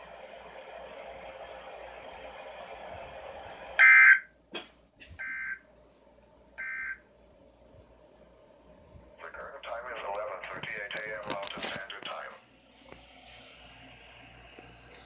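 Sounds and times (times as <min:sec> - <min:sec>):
radio hiss: 0:09.2 - 0:15.0.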